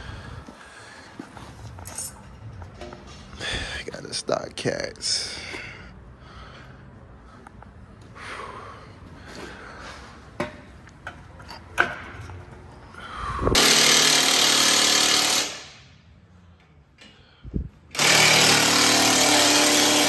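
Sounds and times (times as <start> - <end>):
tools and parts clanking: 0.4 - 4.0, 9.3 - 13.0
impact wrench running: 13.5 - 16.0, 17.9 - 20.0.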